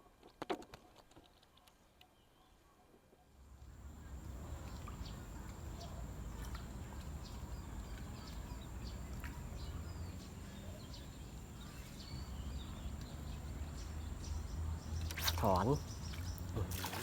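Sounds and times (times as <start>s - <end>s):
birds chirping: 3.8s - 17.0s.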